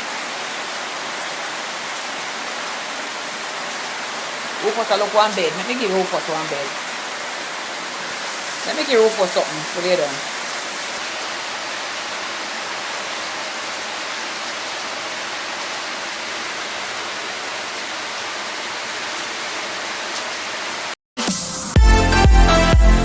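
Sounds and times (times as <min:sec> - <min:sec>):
heavy rain hissing: 0:00.0 - 0:23.0.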